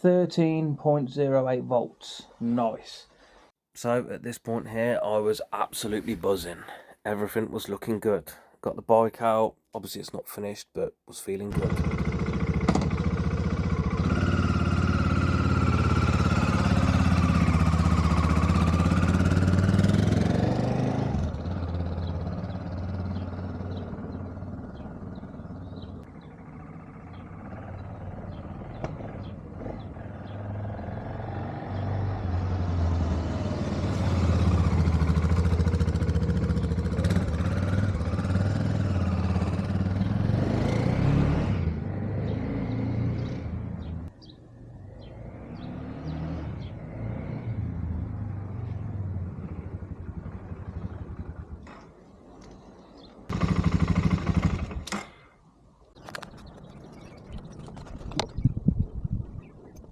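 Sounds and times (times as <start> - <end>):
motorcycle engine running: 11.5 - 30.9, 33.8 - 40.9, 48.6 - 51.8, 53.3 - 54.9.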